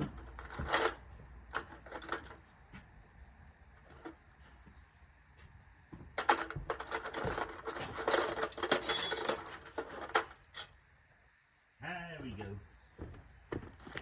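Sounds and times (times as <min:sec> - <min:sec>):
metal sockets clinking: 0:00.0 - 0:02.4, 0:06.2 - 0:10.7.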